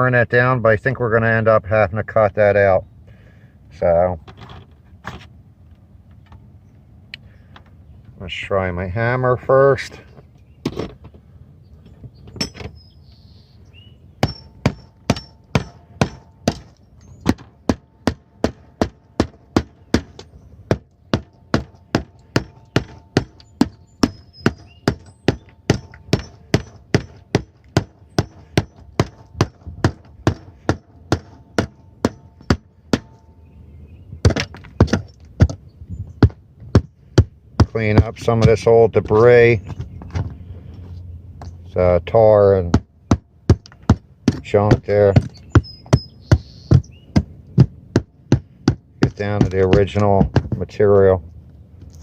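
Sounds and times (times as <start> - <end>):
hammer blows on roofing: 14.2 - 33.3, 34.2 - 35.6, 36.2 - 39.2, 42.6 - 51.0.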